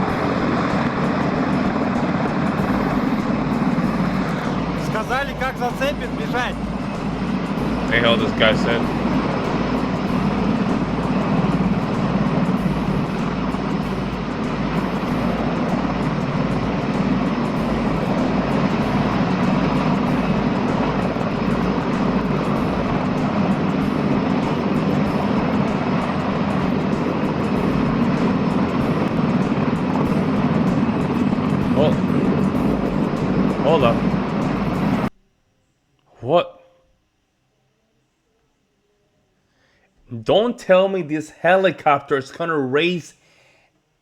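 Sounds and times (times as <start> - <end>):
helicopter rotor and turbine noise: 0.0 - 35.2.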